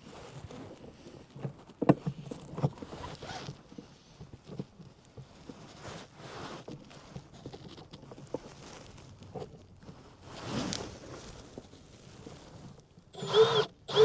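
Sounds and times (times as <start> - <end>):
short rustles: 2.4 - 12.9.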